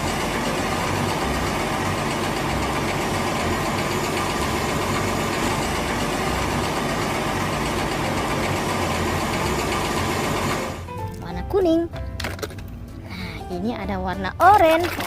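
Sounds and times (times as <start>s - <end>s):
engine idling with low rumble: 0.0s - 11.0s.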